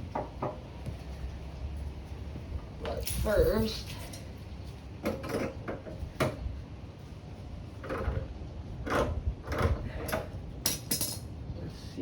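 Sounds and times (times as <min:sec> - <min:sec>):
tools and small parts clunking: 0:05.0 - 0:06.4, 0:08.9 - 0:11.3.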